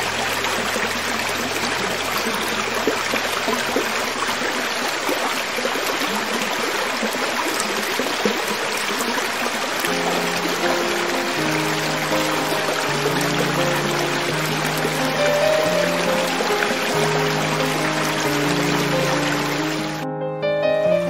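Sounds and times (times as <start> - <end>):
creek running over rocks: 0.0 - 20.0
soft music notes: 9.9 - 21.0.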